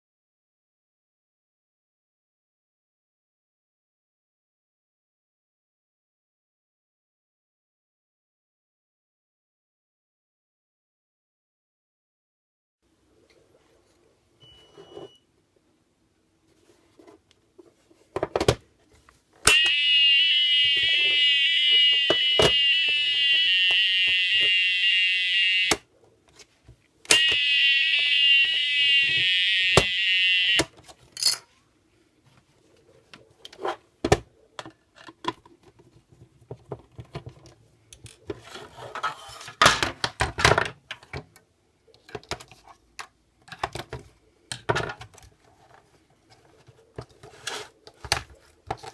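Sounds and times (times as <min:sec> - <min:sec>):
warbling fire alarm: 0:19.5 - 0:25.8, 0:27.1 - 0:30.7.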